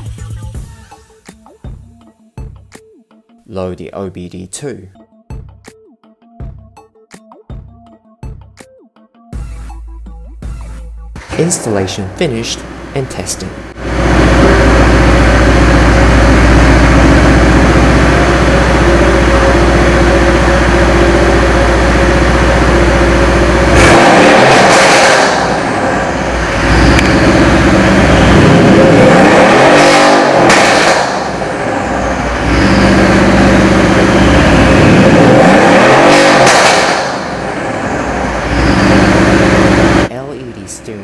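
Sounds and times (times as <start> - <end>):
car engine running and revving: 10.6 - 40.1.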